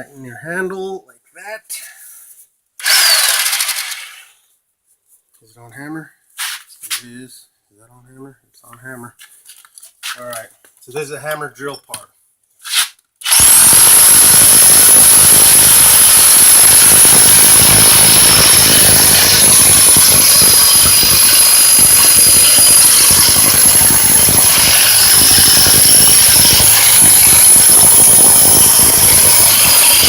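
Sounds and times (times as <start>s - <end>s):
rotary hammer drilling concrete: 2.8s - 4.4s, 13.2s - 30.0s
high whine: 13.3s - 30.0s.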